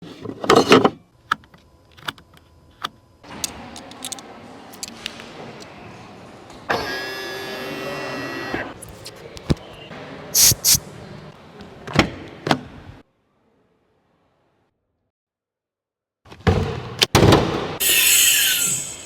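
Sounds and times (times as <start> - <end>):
power window motor whine: 6.7 - 8.8.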